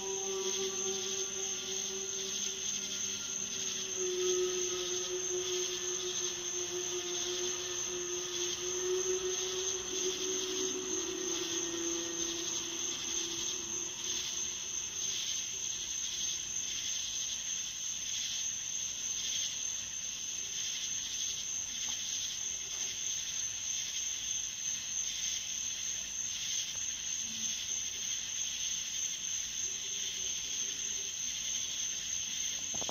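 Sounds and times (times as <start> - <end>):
faint low hum: 0.0 - 16.0
insect chorus high drone: 0.0 - 32.9
soft pulsing insect layer: 0.0 - 32.9.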